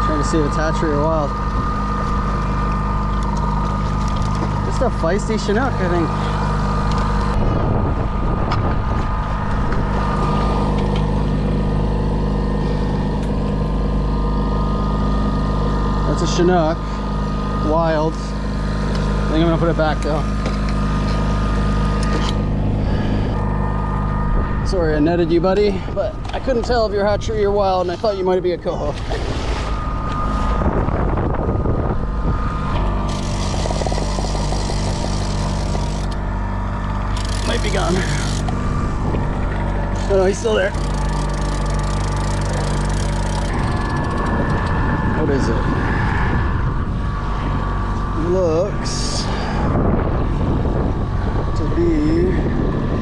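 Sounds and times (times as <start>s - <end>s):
boat motor running: 0.0s - 53.0s
wind: 0.0s - 53.0s
water noise: 26.3s - 47.8s.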